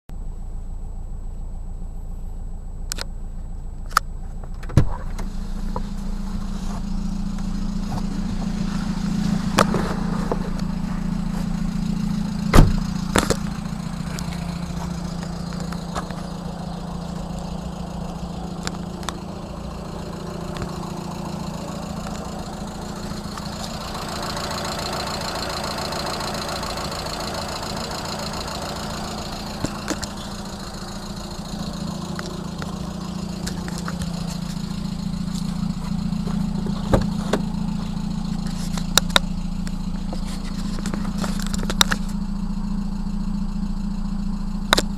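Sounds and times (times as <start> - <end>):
car engine idling: 0.1 - 44.9
rough high rattle: 5.0 - 42.8
sharp engine knocks: 12.2 - 24.0.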